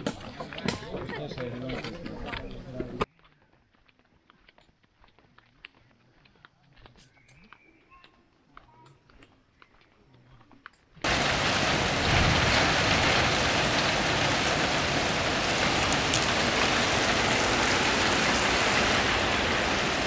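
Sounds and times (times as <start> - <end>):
heavy rain pouring: 11.0 - 20.0.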